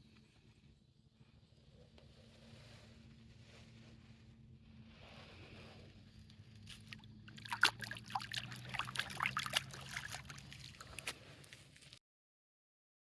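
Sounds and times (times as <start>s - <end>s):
water splashing and trickling: 6.3s - 12.0s.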